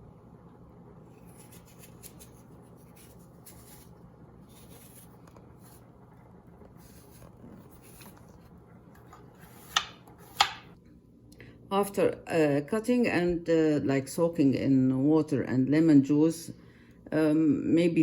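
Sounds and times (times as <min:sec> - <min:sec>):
knife scraping apples: 0:01.1 - 0:06.0, 0:06.6 - 0:10.8.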